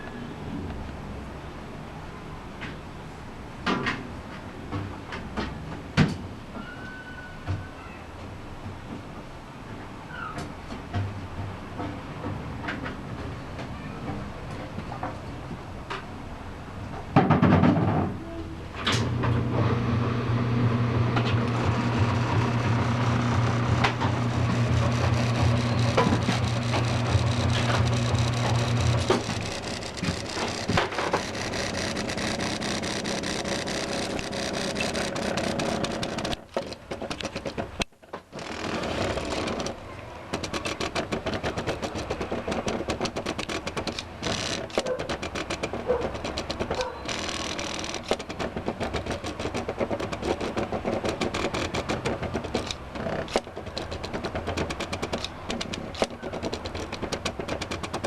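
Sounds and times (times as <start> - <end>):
plotter motors chattering: 19.1 - 58.0.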